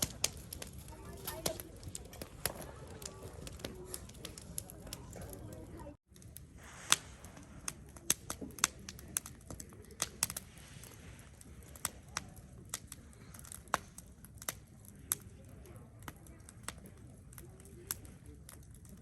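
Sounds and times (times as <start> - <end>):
firewood crackling: 0.0 - 19.0
sharp pops: 6.6 - 10.9.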